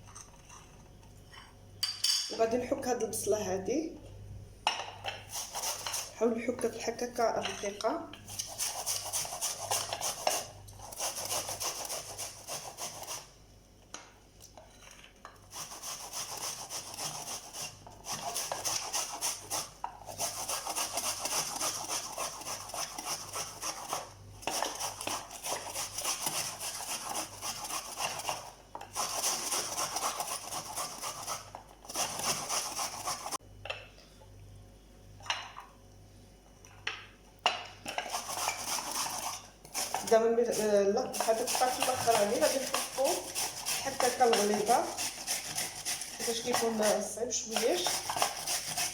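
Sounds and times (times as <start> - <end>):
onion grating rasps: 5.2 - 6.2, 8.2 - 13.3, 15.4 - 33.4, 37.9 - 48.9.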